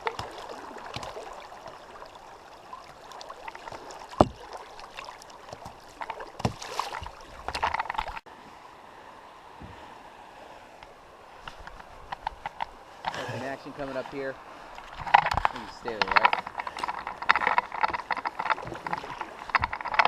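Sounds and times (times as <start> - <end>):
rushing river water: 0.0 - 20.0
paddle knocks: 3.8 - 8.2.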